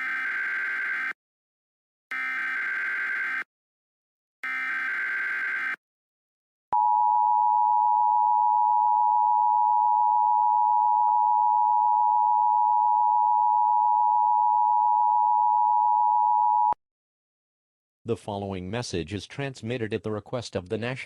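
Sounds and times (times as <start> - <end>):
two-tone alarm: 0.0 - 1.2, 2.1 - 3.5, 4.4 - 5.8.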